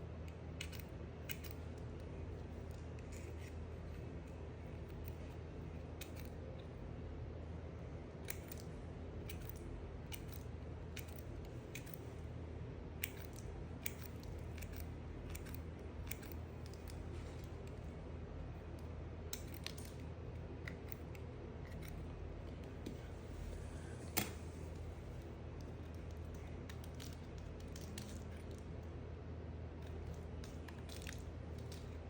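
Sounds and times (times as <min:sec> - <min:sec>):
low steady hum: 0:00.0 - 0:32.0
knife cutting soap: 0:13.0 - 0:17.8.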